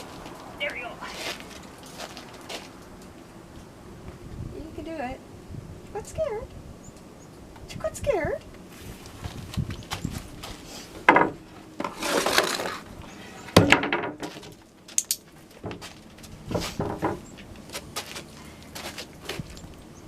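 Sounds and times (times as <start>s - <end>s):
wooden board banging: 11.0s - 12.8s, 13.5s - 14.6s, 16.5s - 17.2s.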